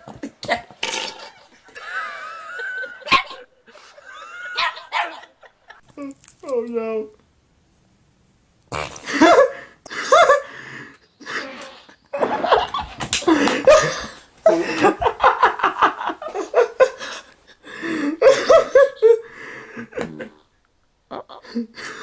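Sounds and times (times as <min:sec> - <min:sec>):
person laughing hard: 0:00.1 - 0:05.8, 0:11.2 - 0:17.3, 0:17.9 - 0:20.4.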